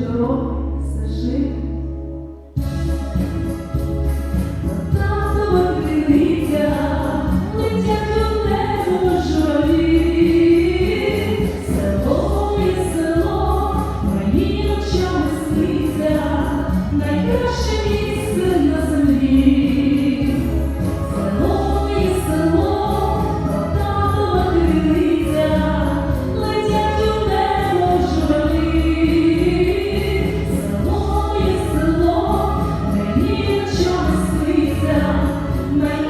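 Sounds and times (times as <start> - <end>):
repeating backing track: 2.5 - 36.0
choir-like singing: 21.0 - 25.2.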